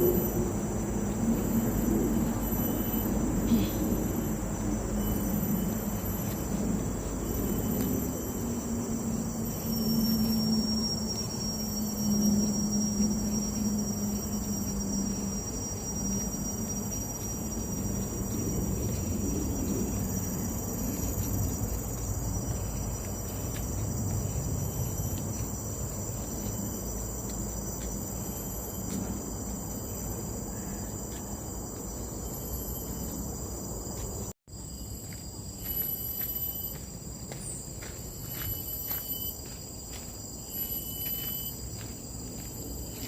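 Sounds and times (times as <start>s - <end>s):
insect pulsing trill: 0.0s - 43.0s
insects droning: 0.0s - 43.0s.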